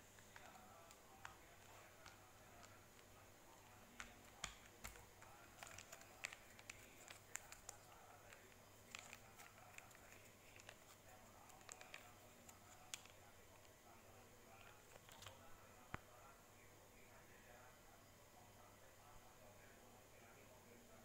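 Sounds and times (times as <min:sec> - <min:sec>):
low steady hum: 0:00.0 - 0:21.0
faint clicks and taps: 0:00.1 - 0:13.8, 0:14.5 - 0:16.1.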